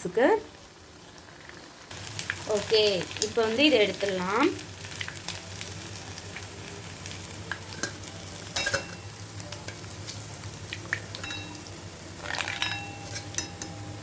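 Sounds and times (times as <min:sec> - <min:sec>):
food sizzling in hot oil: 0:00.0 - 0:14.0
spoon clinking against pan: 0:08.6 - 0:09.1, 0:11.1 - 0:11.7, 0:12.4 - 0:14.0.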